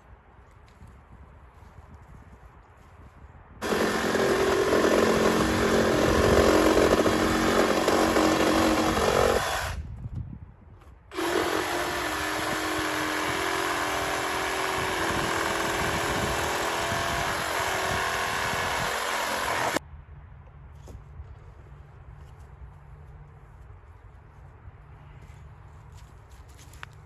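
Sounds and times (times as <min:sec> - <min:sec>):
chainsaw running: 0:03.6 - 0:09.8, 0:11.1 - 0:19.8.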